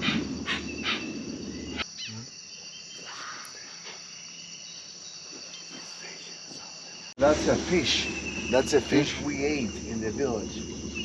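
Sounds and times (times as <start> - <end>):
pulsing chirp: 0.0 - 3.1, 7.2 - 11.0
insect chorus: 0.0 - 11.0
low rumble: 7.2 - 11.0.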